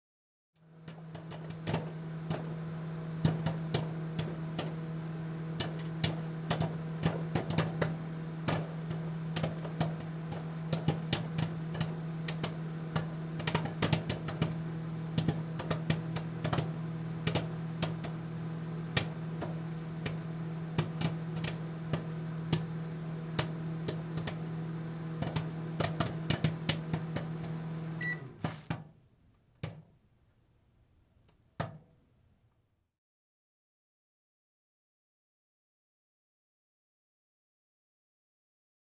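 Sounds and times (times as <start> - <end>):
microwave oven humming: 0.6 - 28.7
popcorn popping: 0.8 - 29.0.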